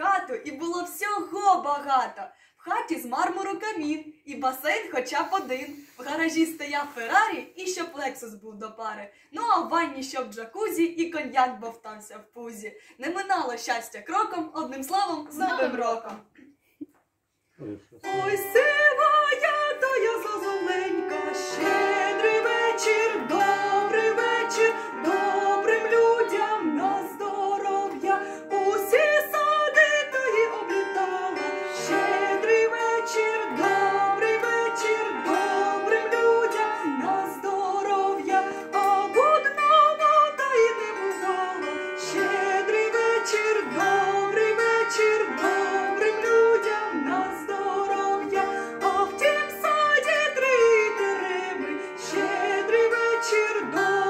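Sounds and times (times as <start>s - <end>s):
woman singing: 0.0s - 16.3s, 18.0s - 54.0s
plucked string accompaniment: 14.8s - 16.2s, 17.9s - 54.0s.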